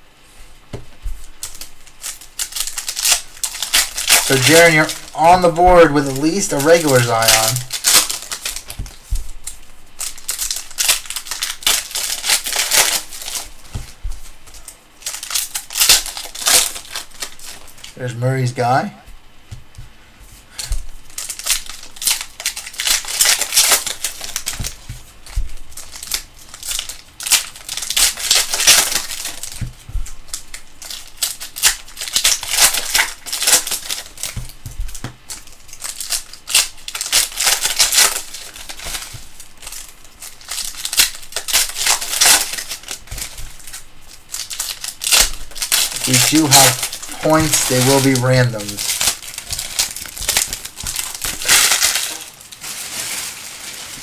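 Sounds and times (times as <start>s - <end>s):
plastic wrappers tearing and crinkling: 1.2s - 18.8s, 20.5s - 54.0s.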